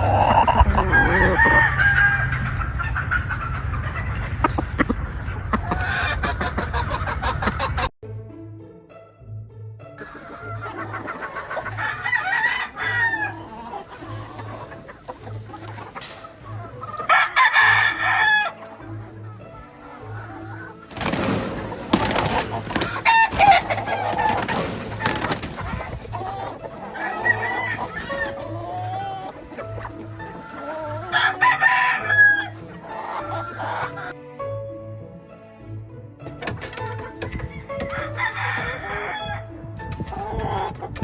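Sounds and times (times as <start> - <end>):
roosters crowing: 0.0 - 4.0, 10.0 - 34.1, 37.4 - 39.5
hens clucking: 0.0 - 7.9, 10.0 - 34.2, 36.3 - 41.0.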